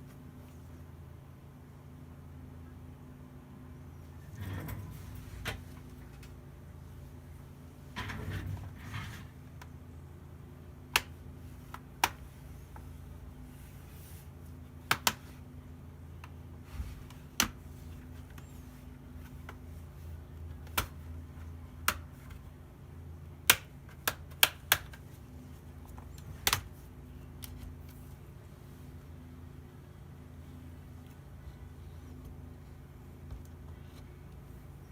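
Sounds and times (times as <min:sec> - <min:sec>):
low steady hum: 0:00.0 - 0:34.9.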